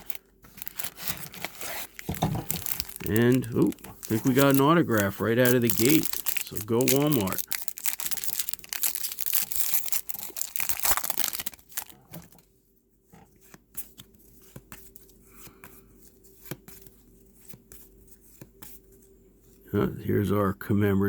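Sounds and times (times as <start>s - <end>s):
cards clicking and rustling: 0.0s - 12.4s
wrapper tearing and crinkling: 0.0s - 12.4s.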